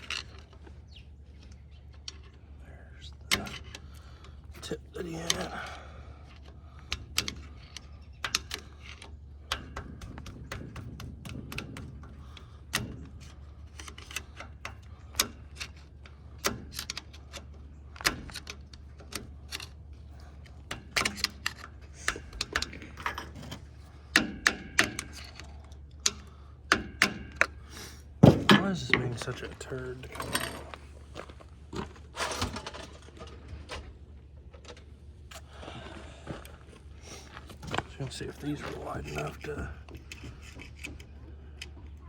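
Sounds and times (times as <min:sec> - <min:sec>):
hand tools knocking on metal: 0:28.2 - 0:29.4.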